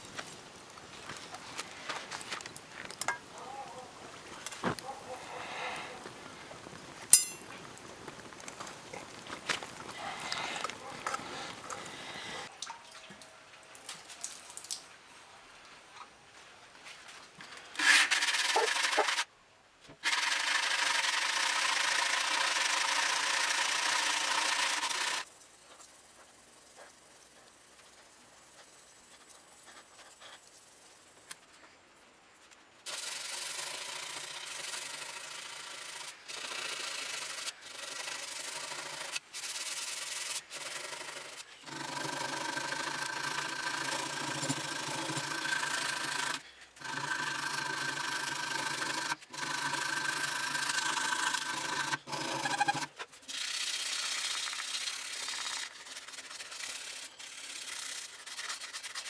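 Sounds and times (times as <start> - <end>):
sanding steel knife blade: 7.1 - 7.4.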